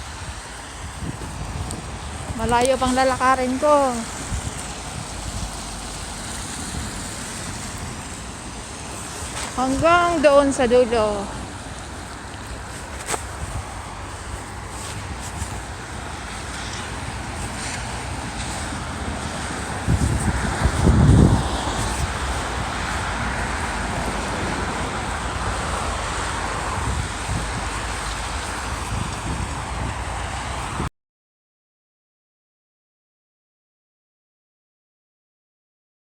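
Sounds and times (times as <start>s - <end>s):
passing traffic: 0.0s - 30.9s
wind: 0.0s - 30.9s
wind buffeting microphone: 0.0s - 30.9s.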